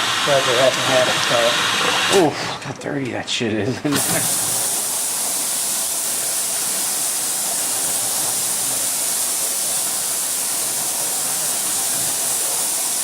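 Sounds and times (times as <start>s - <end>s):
steady hiss: 3.9s - 13.0s.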